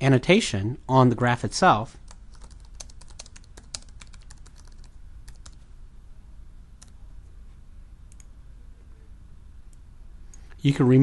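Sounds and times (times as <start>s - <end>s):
laptop keyboard typing: 2.1s - 5.6s.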